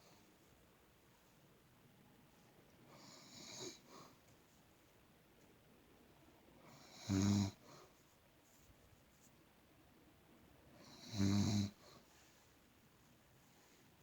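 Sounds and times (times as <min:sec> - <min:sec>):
woman snoring: 0:06.7 - 0:07.6, 0:10.8 - 0:11.8.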